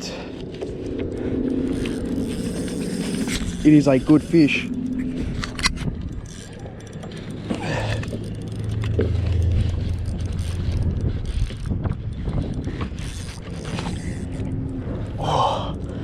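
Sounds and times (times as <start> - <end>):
fishing reel whirring and clicking: 0.0 - 16.0.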